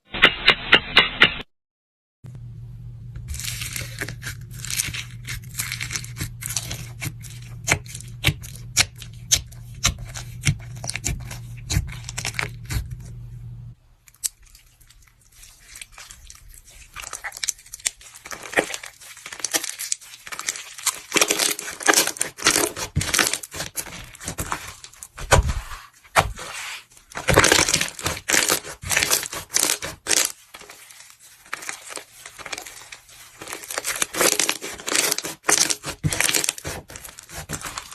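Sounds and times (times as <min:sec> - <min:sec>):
steady low hum: 0:02.3 - 0:14.0
crunchy material crackling: 0:14.2 - 0:37.9.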